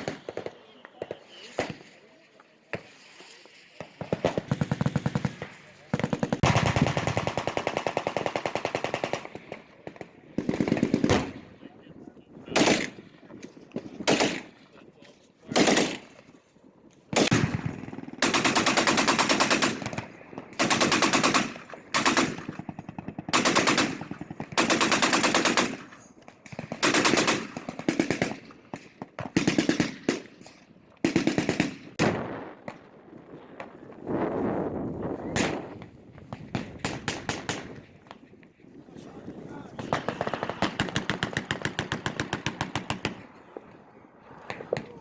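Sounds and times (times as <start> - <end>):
machine-gun fire: 3.9 - 11.4, 12.5 - 13.0, 13.7 - 14.5, 15.5 - 16.1, 17.1 - 30.3, 39.8 - 43.2.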